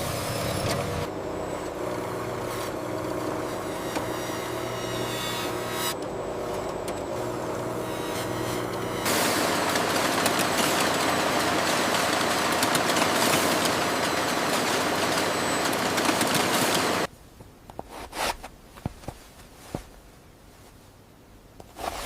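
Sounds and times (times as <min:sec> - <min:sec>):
factory machinery running: 0:00.0 - 0:17.1.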